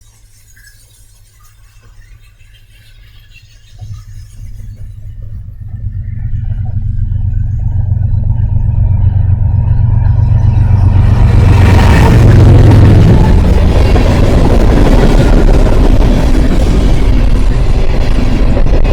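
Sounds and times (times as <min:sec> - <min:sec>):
heavy machine rumble: 0:03.8 - 0:18.9.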